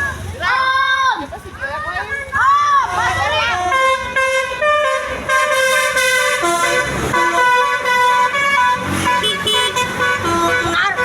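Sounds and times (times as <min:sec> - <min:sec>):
multi-tone bus horn tune: 0:03.2 - 0:11.0.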